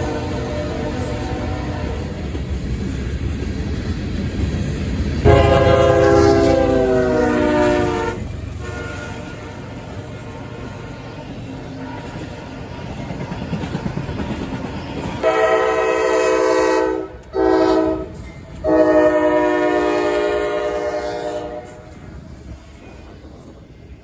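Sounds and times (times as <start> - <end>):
locomotive air horn blasts: 0.0 - 2.0, 5.2 - 11.0, 15.2 - 21.9
freight locomotive rumbling past: 0.0 - 24.0.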